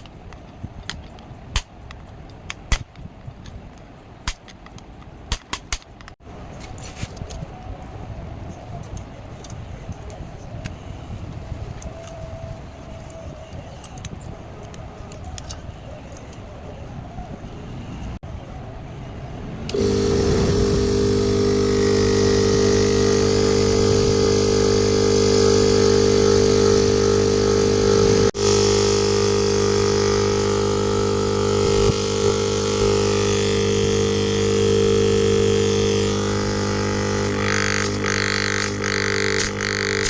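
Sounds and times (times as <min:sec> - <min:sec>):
refrigerator compressor hum: 0:19.8 - 0:40.0.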